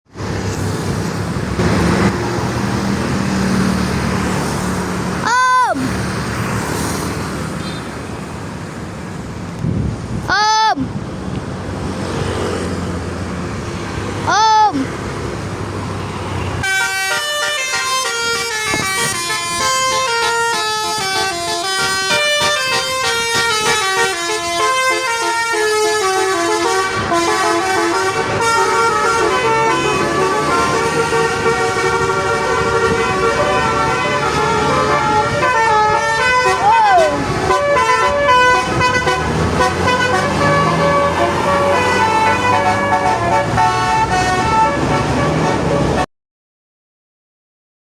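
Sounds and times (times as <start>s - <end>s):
wind and road noise rumble: 0.1s - 46.1s
bus air horn note: 16.6s - 46.1s.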